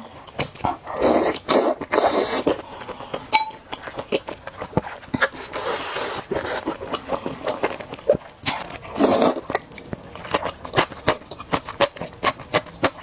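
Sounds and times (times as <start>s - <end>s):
slurping noodle soup: 0.0s - 13.0s
wet chewing: 0.0s - 13.0s.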